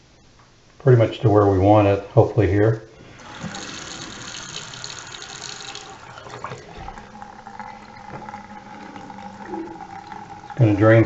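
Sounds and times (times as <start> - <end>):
water pouring from tank: 3.0 - 11.0.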